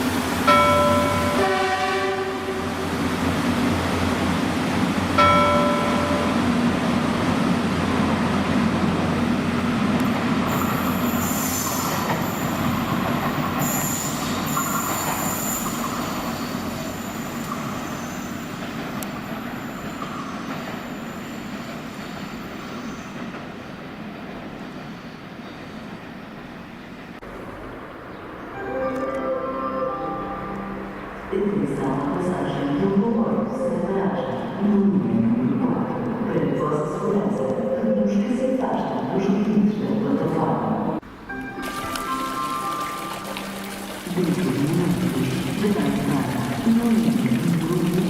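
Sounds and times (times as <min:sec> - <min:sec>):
train rumbling on rails: 0:00.0 - 0:42.7, 0:43.4 - 0:48.0
short train horn note: 0:01.1 - 0:02.7
high wheel squeal: 0:10.5 - 0:12.9, 0:13.5 - 0:18.7.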